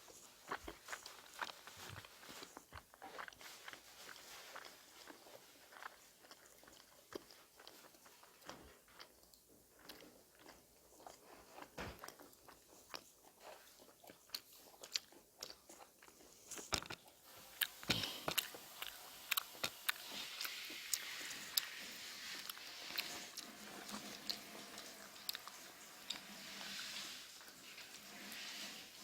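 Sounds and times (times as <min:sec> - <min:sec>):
person chewing and crunching food: 0:00.0 - 0:29.0.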